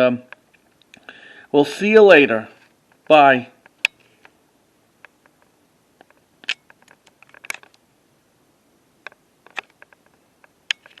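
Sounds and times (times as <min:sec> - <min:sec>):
phone handling clicks and taps: 0:09.0 - 0:11.0.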